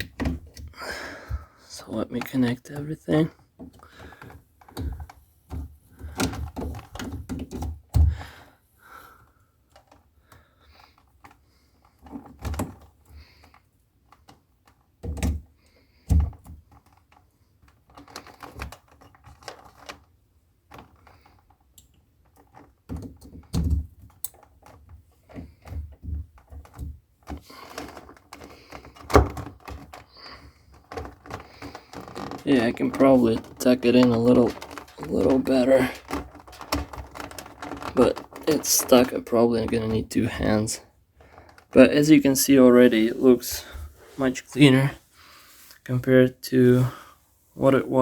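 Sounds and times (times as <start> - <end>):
cables and plugs clicking: 0.0 - 8.4, 20.7 - 44.8
rustling: 15.6 - 48.0.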